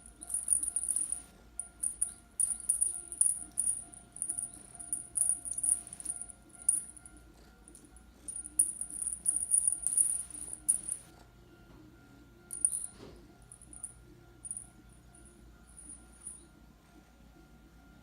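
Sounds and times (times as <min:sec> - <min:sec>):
toy rattling and jingling: 0:00.0 - 0:11.1, 0:12.5 - 0:14.7, 0:15.7 - 0:16.4
faint steady hum: 0:00.0 - 0:18.0.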